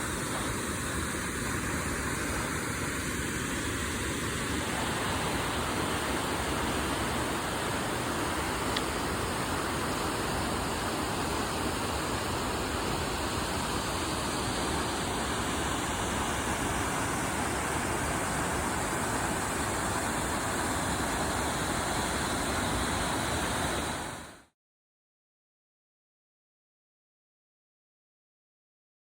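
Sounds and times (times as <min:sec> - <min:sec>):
rush of falling water: 0:00.0 - 0:24.5.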